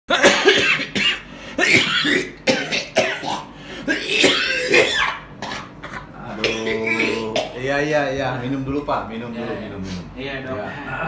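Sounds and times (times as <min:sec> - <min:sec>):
man coughing hard: 0:00.1 - 0:07.7.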